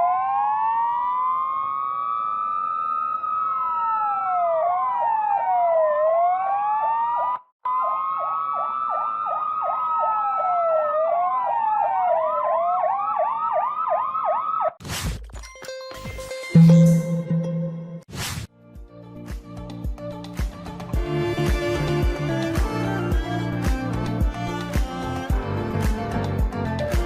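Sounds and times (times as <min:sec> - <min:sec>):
electronic police siren: 0:00.0 - 0:14.8
brief steady tones: 0:16.5 - 0:18.1.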